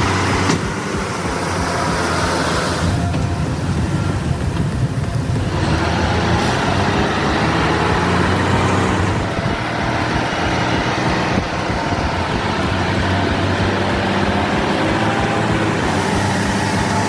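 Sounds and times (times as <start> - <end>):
road and traffic noise: 0.0 - 17.0
truck engine under load: 0.0 - 17.0.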